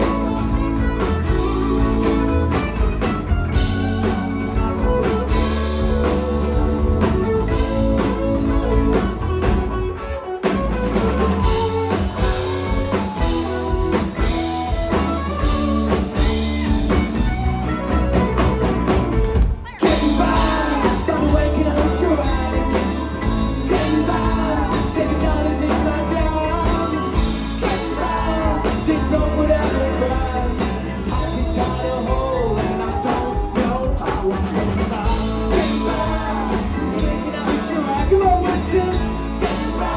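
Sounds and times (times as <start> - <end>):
drum kit: 0.0 - 39.9
guitars and bass: 0.0 - 39.9
person singing: 19.7 - 39.9.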